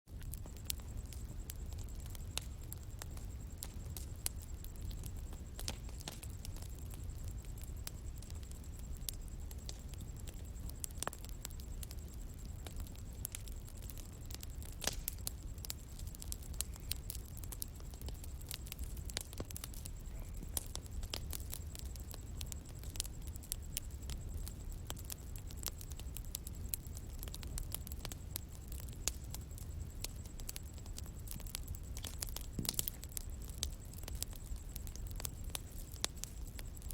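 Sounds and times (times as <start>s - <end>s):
bonfire crackling and popping: 0.1s - 36.9s.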